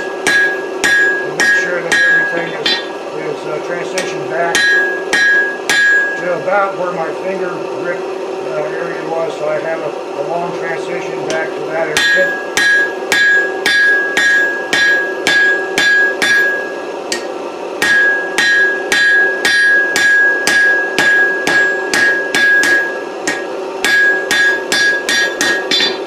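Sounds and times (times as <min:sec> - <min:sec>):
hammer ringing on hot steel: 0:00.0 - 0:03.0, 0:03.9 - 0:06.6, 0:11.3 - 0:26.0.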